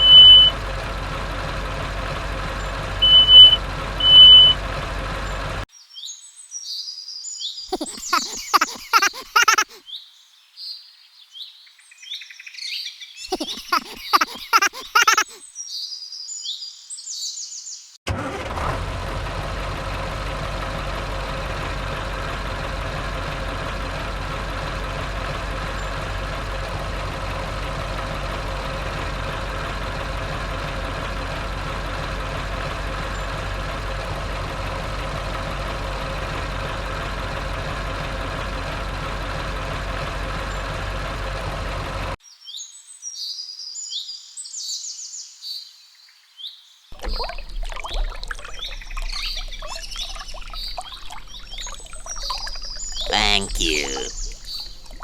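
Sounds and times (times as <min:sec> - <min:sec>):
birds chirping: 0:03.0 - 0:03.6, 0:07.7 - 0:09.8, 0:13.2 - 0:15.4, 0:48.5 - 0:55.0.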